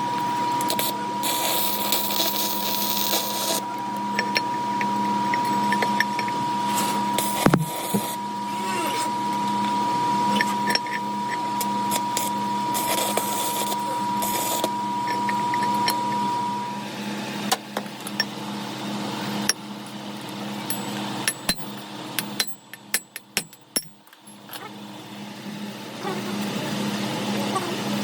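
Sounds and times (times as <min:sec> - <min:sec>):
thin high whine: 0:00.0 - 0:17.1
machine hum: 0:00.0 - 0:21.2.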